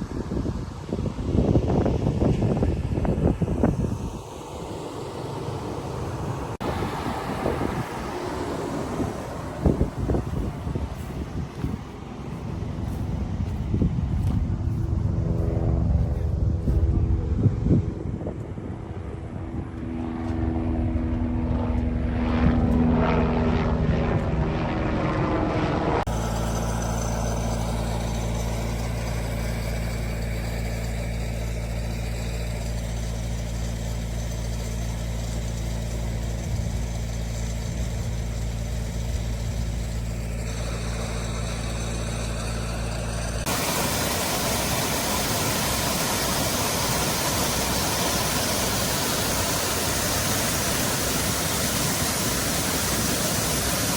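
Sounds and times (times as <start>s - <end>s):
engine droning: 0.0s - 53.9s
steady rushing noise: 1.3s - 19.1s, 39.1s - 53.9s.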